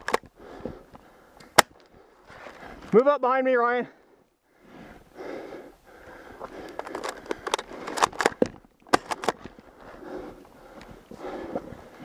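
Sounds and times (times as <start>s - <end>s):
close breathing and sniffing: 0.3s - 2.9s, 4.5s - 8.5s, 9.1s - 12.0s
brush snapping and crunching: 6.5s - 9.7s.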